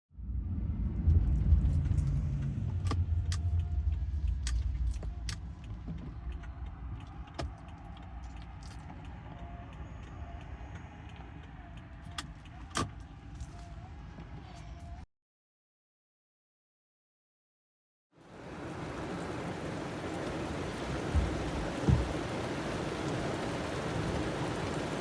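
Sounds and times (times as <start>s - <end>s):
loud low rumble: 0.1s - 5.6s
heavy rain on a car: 18.2s - 25.0s.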